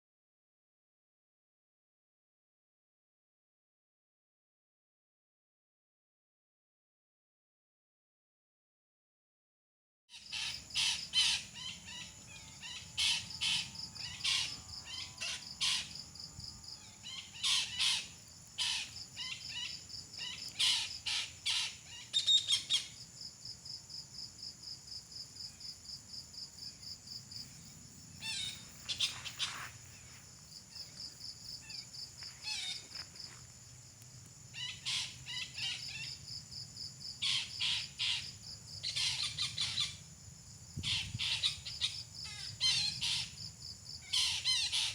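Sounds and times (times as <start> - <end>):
high-pitched insect trill: 10.2 - 44.9.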